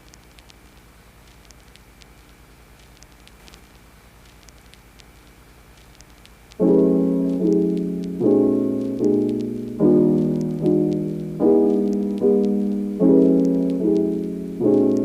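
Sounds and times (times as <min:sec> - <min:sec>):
piano chords: 0:06.6 - 0:15.0.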